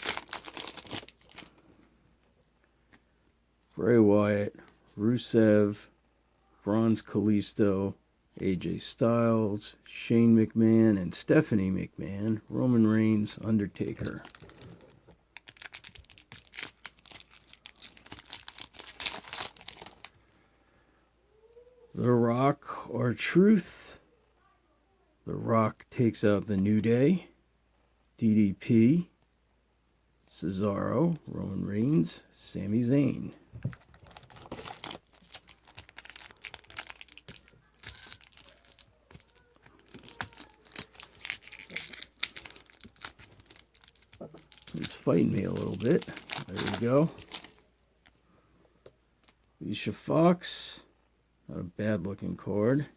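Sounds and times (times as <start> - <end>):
wrapper crinkling and tearing: 0.0 - 1.8, 13.3 - 20.3, 33.6 - 48.2
cards clicking and rustling: 33.6 - 47.6.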